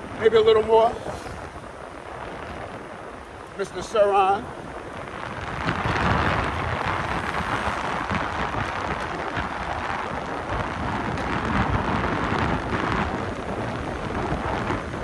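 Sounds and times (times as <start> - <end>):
wind buffeting the microphone: 0.0 - 15.0.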